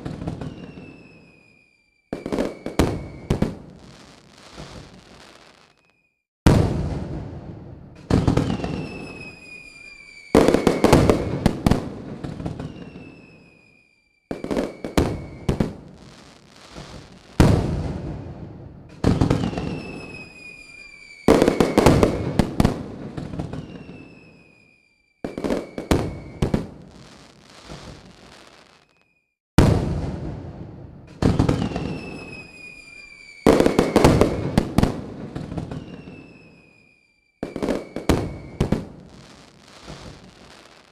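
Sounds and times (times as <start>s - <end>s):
fireworks whistles falling in pitch: 0.0s - 6.7s, 8.0s - 18.0s, 18.9s - 29.4s, 31.2s - 40.9s
fireworks crackling: 0.0s - 30.4s, 31.0s - 40.9s
fireworks bangs: 0.0s - 40.9s.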